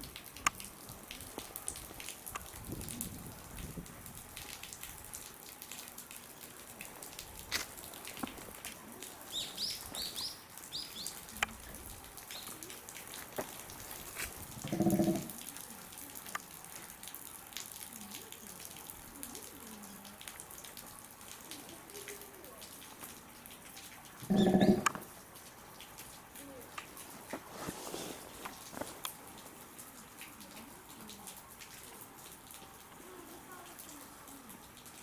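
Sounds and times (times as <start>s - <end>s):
small birds chirping: 9.3s - 11.3s, 24.2s - 24.9s
low animal call: 14.6s - 15.4s, 24.2s - 25.0s.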